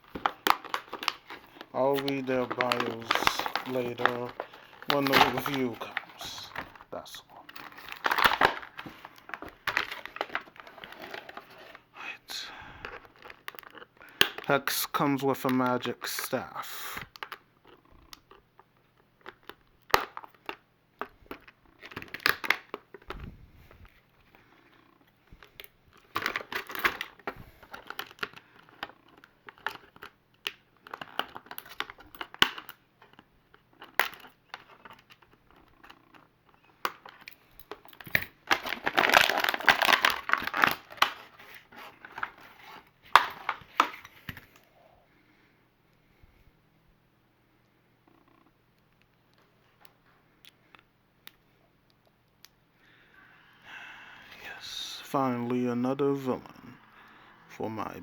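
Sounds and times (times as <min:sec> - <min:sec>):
plastic packaging crinkling: 0:00.0 - 0:24.4, 0:25.0 - 0:44.7.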